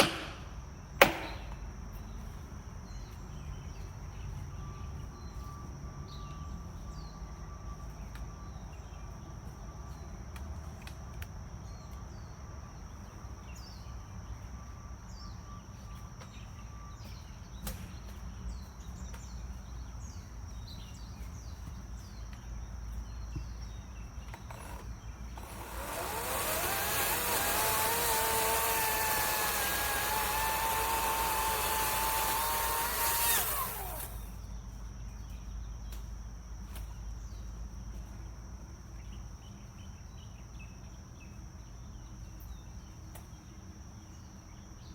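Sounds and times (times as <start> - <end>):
electric chainsaw whining: 24.4 - 34.3.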